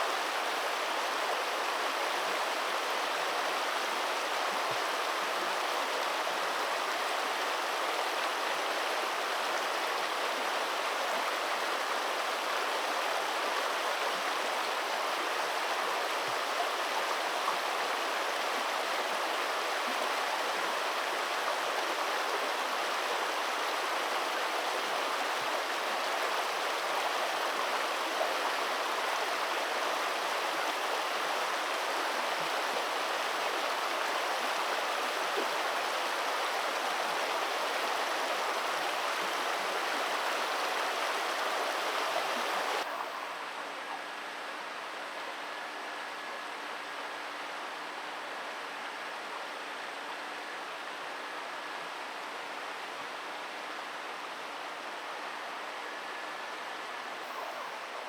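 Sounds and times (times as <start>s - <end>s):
river water rushing: 20.6s - 44.2s.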